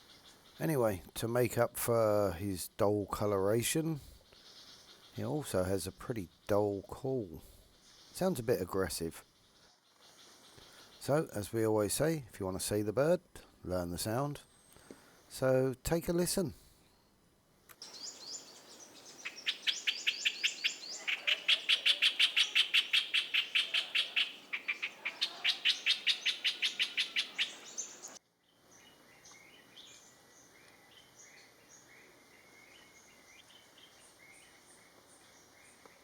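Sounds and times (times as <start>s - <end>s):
faint bird chirps: 3.8s - 11.3s, 17.8s - 36.0s.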